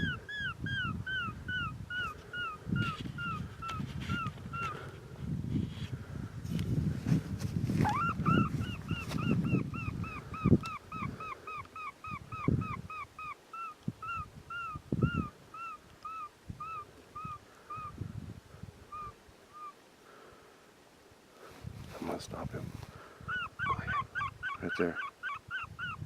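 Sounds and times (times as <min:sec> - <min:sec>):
electronic canine distress call: 0:07.8 - 0:08.5, 0:23.4 - 0:26.0.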